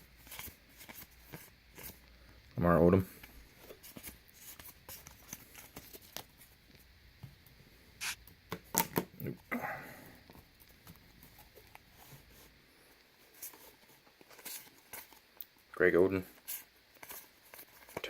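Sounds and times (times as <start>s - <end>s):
trading cards rustling and clicking: 0.2s - 2.0s, 3.1s - 6.5s, 16.3s - 18.0s.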